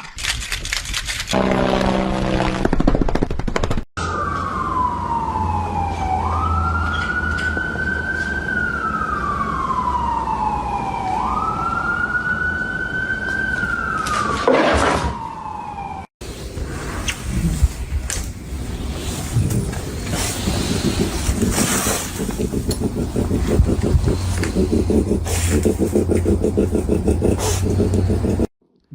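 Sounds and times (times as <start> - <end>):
emergency siren wailing: 4.0 - 16.1.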